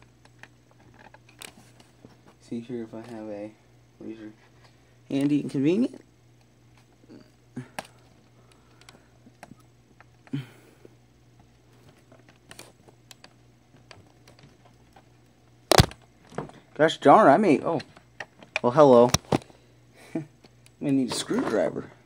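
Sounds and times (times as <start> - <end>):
faint low hum: 0.0 - 22.0.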